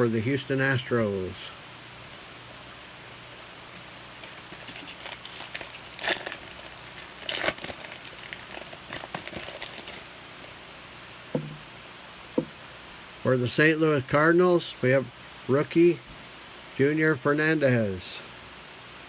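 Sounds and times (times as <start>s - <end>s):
trading cards rustling: 3.2s - 11.6s.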